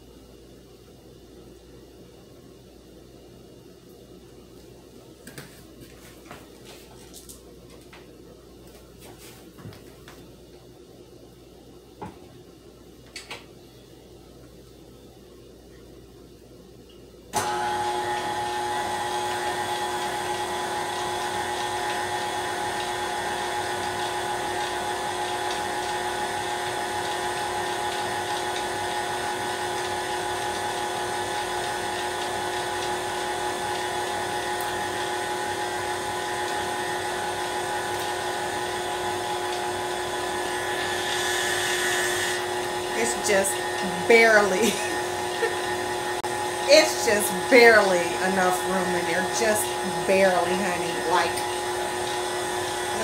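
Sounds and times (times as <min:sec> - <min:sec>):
stand mixer motor whine: 0:17.4 - 0:53.0.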